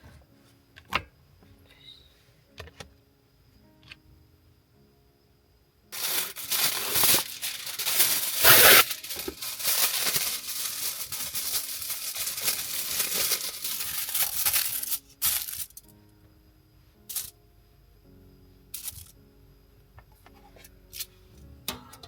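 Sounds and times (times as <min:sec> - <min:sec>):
tearing: 0:06.0 - 0:15.8
crinkling and rustling: 0:06.0 - 0:15.9, 0:18.8 - 0:19.2.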